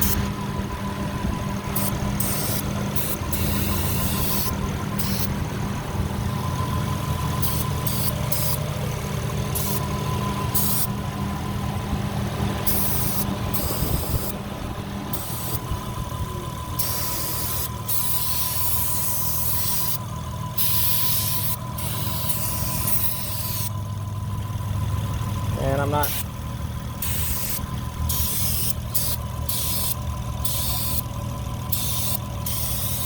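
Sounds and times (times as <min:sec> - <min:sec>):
thin steady high tone: 0:00.0 - 0:11.8, 0:15.1 - 0:24.5, 0:27.0 - 0:33.0
car engine idling: 0:00.0 - 0:33.0
spray can hissing bursts: 0:01.8 - 0:05.4, 0:07.4 - 0:08.6, 0:09.5 - 0:09.9, 0:10.5 - 0:10.9, 0:12.7 - 0:14.3, 0:15.1 - 0:15.6, 0:16.8 - 0:20.0, 0:20.6 - 0:23.7, 0:27.0 - 0:31.0, 0:31.7 - 0:33.0.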